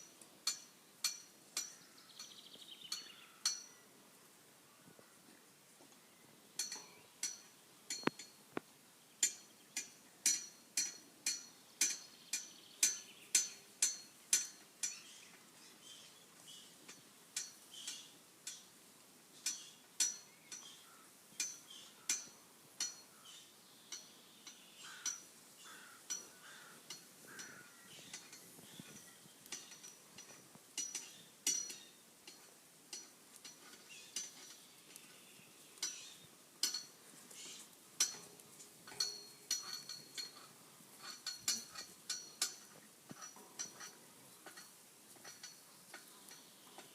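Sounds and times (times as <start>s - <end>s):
ringing metallic clinks: 0.4s - 3.8s, 6.6s - 8.4s, 26.9s - 34.6s, 35.8s - 37.0s, 38.0s - 46.5s.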